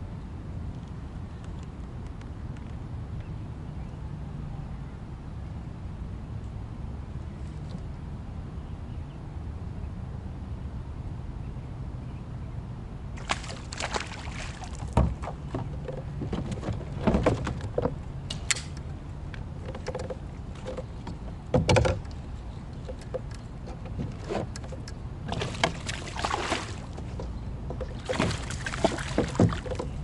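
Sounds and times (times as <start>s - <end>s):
boat engine low rumble: 0.0s - 30.0s
gear knocking against hull: 19.6s - 22.2s, 26.7s - 30.0s.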